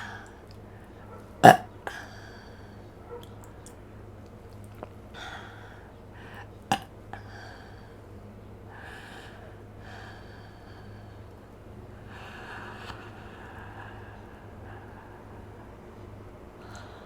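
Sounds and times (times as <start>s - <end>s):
person breathing through mouth: 0.0s - 0.9s, 12.0s - 15.6s
mouth clicks: 1.4s - 2.0s, 6.7s - 6.9s.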